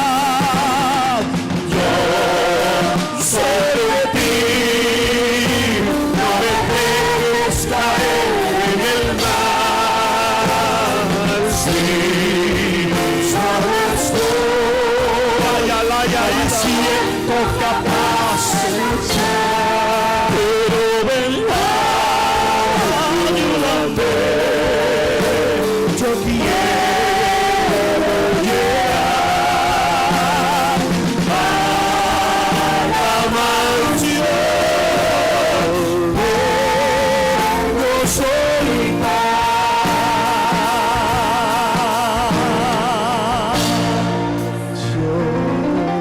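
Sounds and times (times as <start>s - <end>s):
worship song melody with band: 0.0s - 46.0s.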